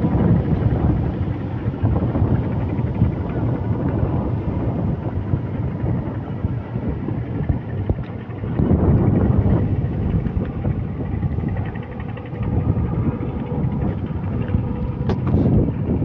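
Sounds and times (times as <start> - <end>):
outboard motor running: 0.0 - 16.0.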